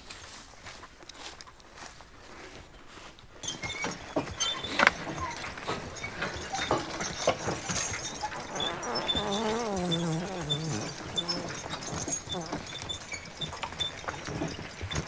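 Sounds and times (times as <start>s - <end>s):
wagon rattling: 1.8s - 15.0s
horse hooves knocking: 3.4s - 15.0s.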